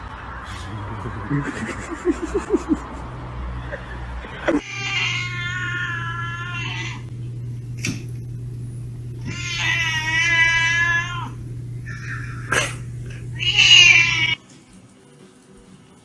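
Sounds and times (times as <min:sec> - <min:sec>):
cat meowing: 0:04.6 - 0:07.1, 0:09.1 - 0:14.4
steady low hum: 0:04.6 - 0:14.4.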